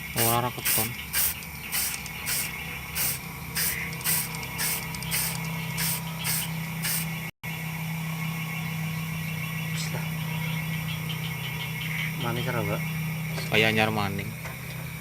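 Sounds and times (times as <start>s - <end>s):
steady low hum: 0.0s - 13.4s
spray can hissing puffs: 0.2s - 7.1s.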